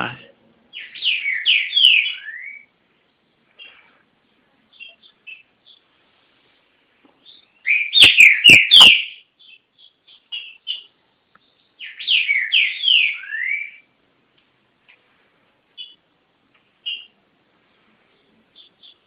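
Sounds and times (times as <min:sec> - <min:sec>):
bird whistling song: 0:00.7 - 0:02.7, 0:04.7 - 0:05.9, 0:07.2 - 0:13.9, 0:15.8 - 0:16.0, 0:16.8 - 0:17.2, 0:18.5 - 0:19.0.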